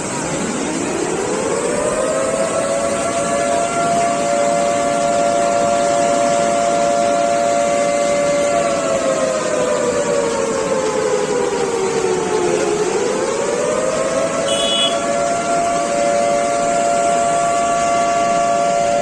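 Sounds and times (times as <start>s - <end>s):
two-tone warning siren wail: 0.0s - 19.0s.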